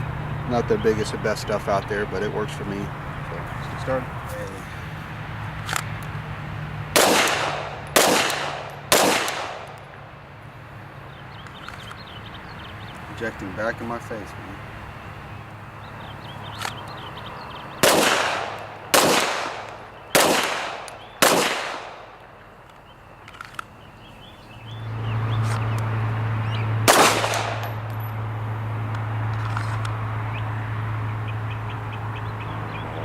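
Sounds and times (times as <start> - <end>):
pistol shots: 6.9 - 9.8, 17.8 - 22.2, 26.9 - 27.9.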